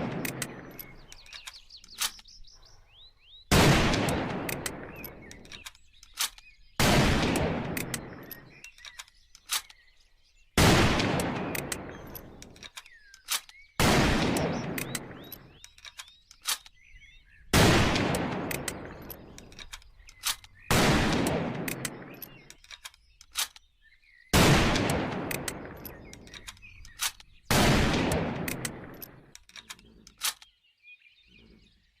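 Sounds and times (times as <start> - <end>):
rifle shots echoing: 0.0 - 1.4, 3.5 - 8.6, 10.6 - 12.7, 13.3 - 15.6, 17.5 - 22.6, 24.3 - 29.4.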